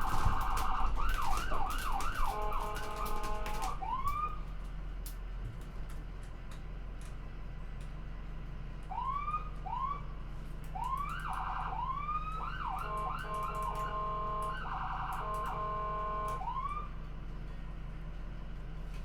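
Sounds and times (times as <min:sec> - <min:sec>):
ambulance siren: 0:00.0 - 0:04.5, 0:08.9 - 0:10.1, 0:10.8 - 0:17.0.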